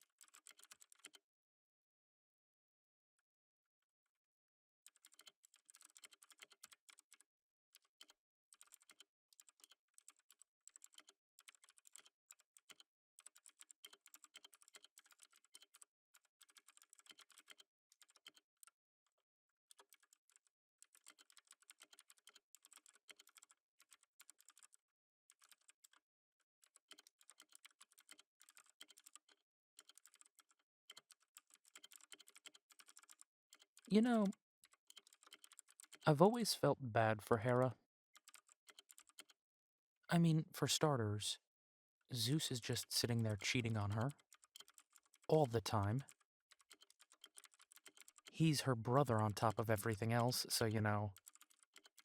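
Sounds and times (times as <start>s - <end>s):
computer keyboard typing: 0.0s - 1.2s, 4.9s - 7.2s, 7.8s - 18.7s, 19.7s - 26.0s, 26.6s - 36.1s, 38.2s - 39.4s, 42.2s - 52.0s.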